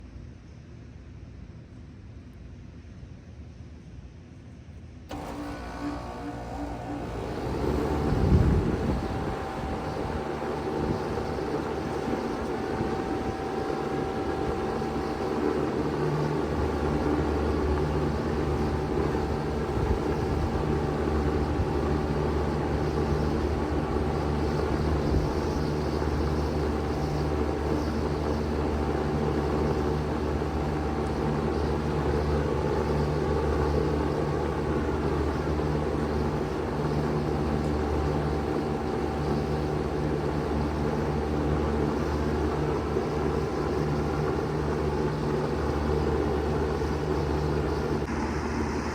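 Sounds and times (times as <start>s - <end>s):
heat pump fan rush: 4.9s - 48.9s
low hum: 5.1s - 48.9s.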